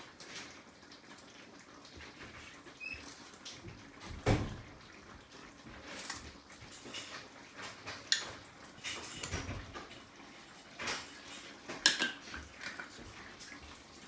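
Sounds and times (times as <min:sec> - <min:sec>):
utensils and dishes clinking: 0:05.8 - 0:14.0.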